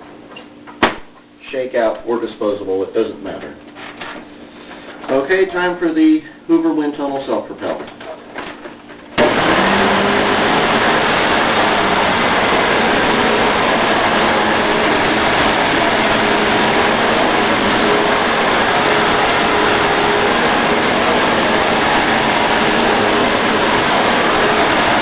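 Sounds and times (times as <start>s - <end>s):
vacuum cleaner motor running: 9.2s - 25.0s.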